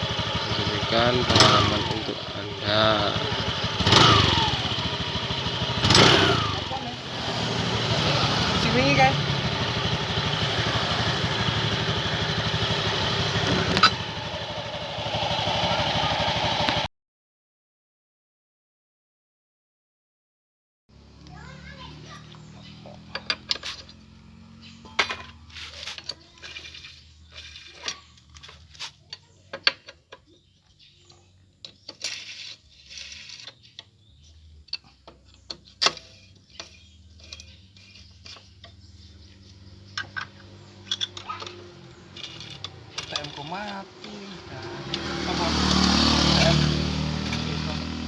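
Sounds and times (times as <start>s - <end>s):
metal tools clinking: 22.2s - 45.4s, 46.4s - 48.0s.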